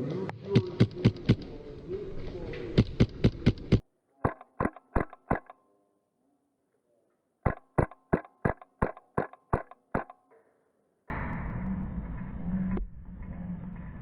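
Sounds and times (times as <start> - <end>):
airsoft rifle shots: 7.4 - 10.2.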